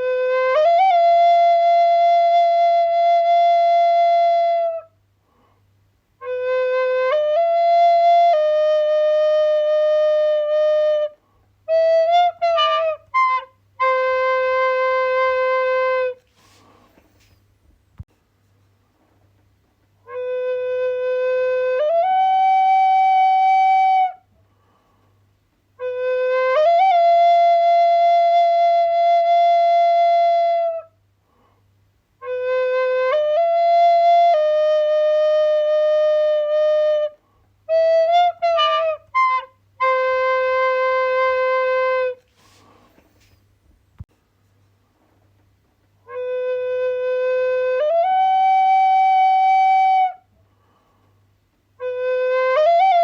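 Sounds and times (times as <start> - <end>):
solo flute playing: 0.0 - 5.0, 6.2 - 16.7, 20.0 - 24.3, 25.8 - 31.0, 32.2 - 43.4, 46.0 - 50.3, 51.8 - 53.0.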